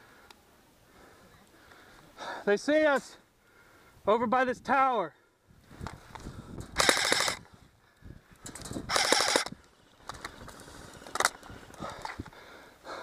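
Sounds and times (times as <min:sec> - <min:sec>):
airsoft rifle full-auto bursts: 0:06.8 - 0:07.4, 0:08.9 - 0:09.6.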